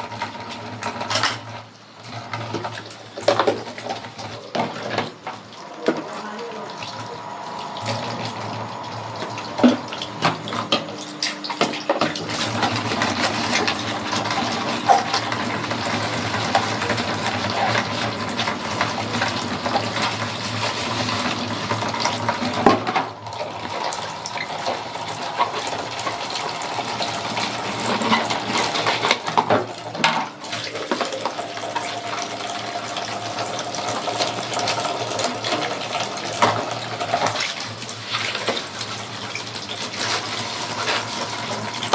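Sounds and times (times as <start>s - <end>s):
tap water running into sink: 0.0s - 41.9s
dishes clinking and knocking: 0.8s - 1.6s, 27.8s - 31.9s.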